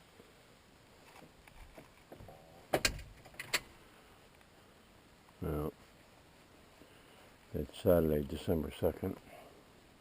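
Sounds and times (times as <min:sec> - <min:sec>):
handling clicks and rustles: 0:01.0 - 0:04.5.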